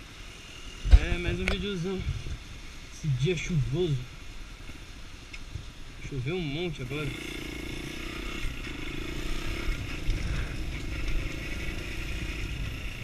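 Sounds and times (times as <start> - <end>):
wind and wet road hiss: 0.0 - 13.0
motorcycle engine running: 7.0 - 13.0.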